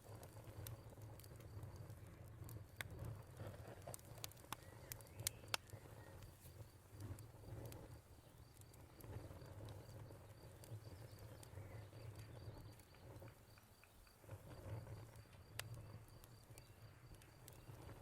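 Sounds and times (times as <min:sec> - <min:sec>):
wood fire crackling: 0:00.0 - 0:18.0
cricket chirping: 0:04.5 - 0:18.0.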